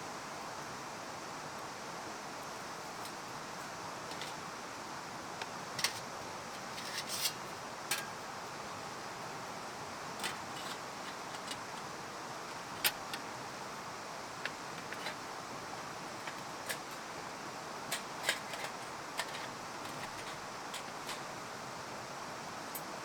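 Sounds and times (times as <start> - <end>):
fire hissing: 9.0 - 22.0.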